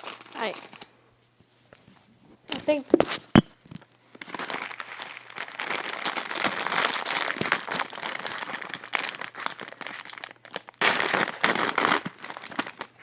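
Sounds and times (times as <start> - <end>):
plastic wrapper crinkling: 0.0 - 0.9, 3.7 - 13.0.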